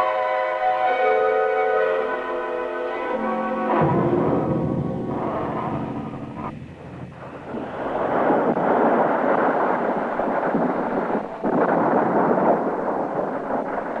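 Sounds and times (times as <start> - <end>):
loud rumbling crash: 3.2 - 12.6.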